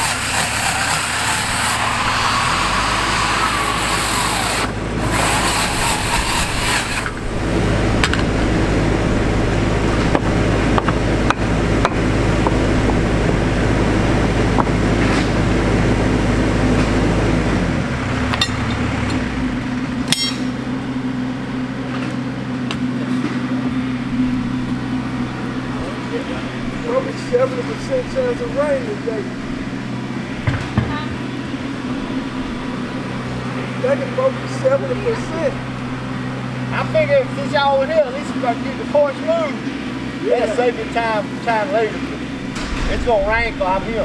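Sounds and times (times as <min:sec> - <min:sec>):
backhoe diesel engine running: 0:00.0 - 0:44.0
sharp knocks and cracks: 0:42.5 - 0:43.5.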